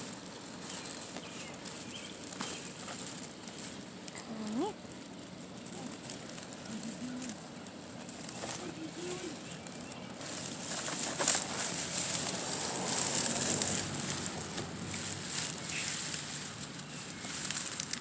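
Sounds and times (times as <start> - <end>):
tall grass rustling: 0.0 - 18.0.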